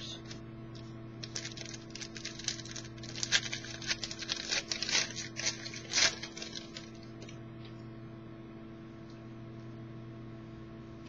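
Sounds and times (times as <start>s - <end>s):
foil wrapper crinkling and tearing: 1.2s - 7.3s.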